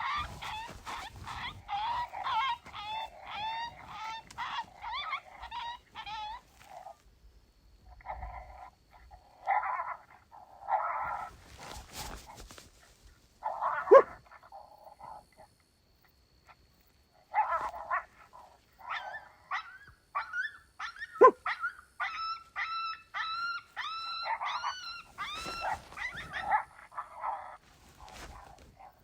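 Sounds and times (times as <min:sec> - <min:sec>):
rough barking calls: 0:00.0 - 0:07.0, 0:13.4 - 0:14.2, 0:17.3 - 0:29.0
coyote yipping and howling: 0:00.0 - 0:15.5, 0:16.4 - 0:29.0.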